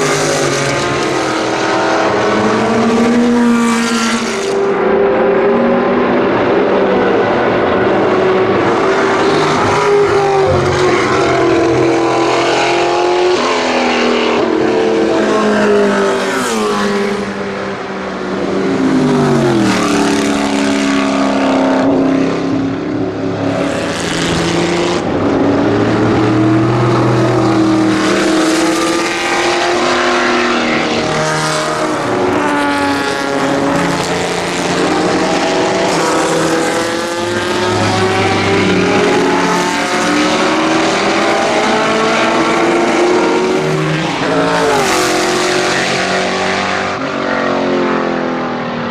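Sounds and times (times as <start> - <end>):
race car engine accelerating: 19.0 - 48.3.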